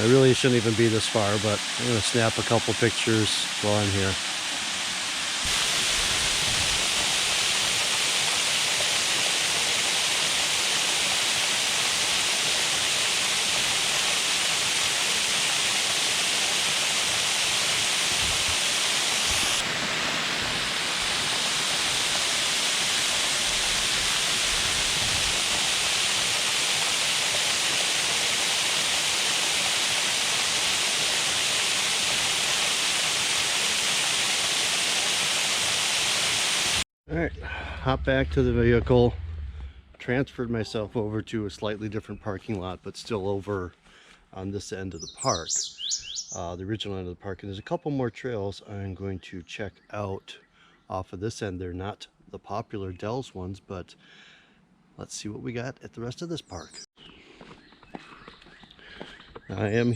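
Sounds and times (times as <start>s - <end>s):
water rushing over spillway: 0.0s - 36.8s.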